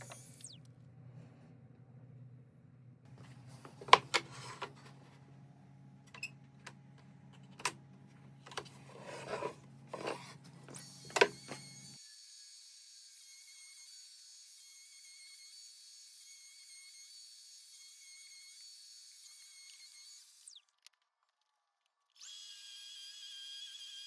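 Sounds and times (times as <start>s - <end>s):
low steady hum: 0.0s - 10.7s.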